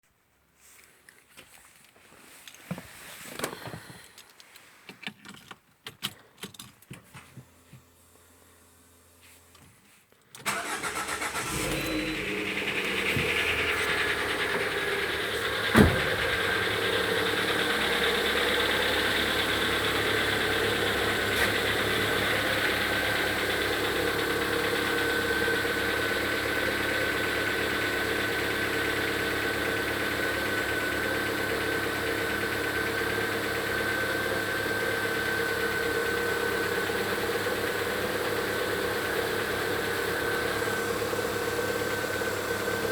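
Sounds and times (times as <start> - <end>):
car engine idling with knock: 10.6 - 42.9
loud thump: 12.2 - 18.2.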